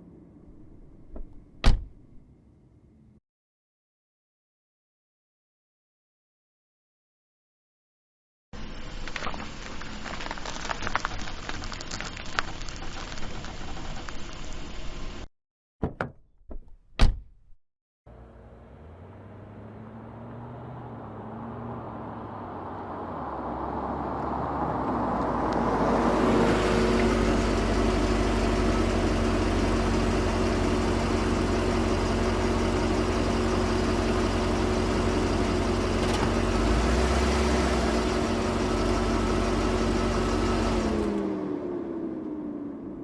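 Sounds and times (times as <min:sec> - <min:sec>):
car engine idling: 0:18.1 - 0:20.4, 0:26.9 - 0:37.0.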